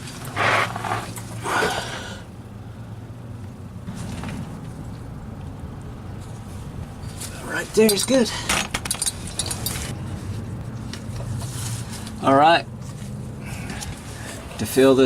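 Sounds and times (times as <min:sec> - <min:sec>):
low steady hum: 0:00.0 - 0:15.0
person breathing heavily with effort: 0:01.3 - 0:02.9, 0:13.4 - 0:14.5.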